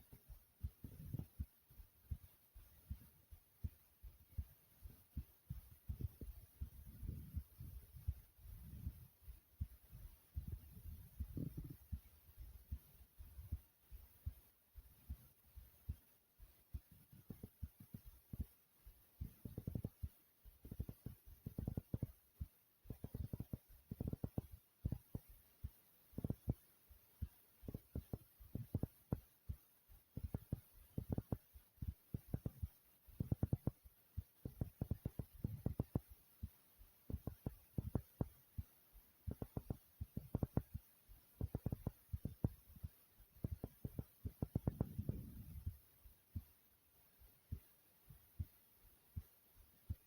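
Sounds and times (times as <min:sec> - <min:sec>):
heartbeat thumps: 0:00.0 - 0:46.6, 0:47.2 - 0:50.0.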